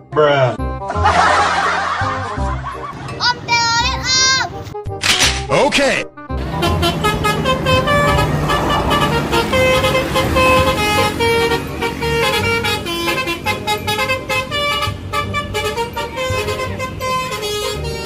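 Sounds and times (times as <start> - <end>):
bus horn playing a tune: 6.3 - 18.0.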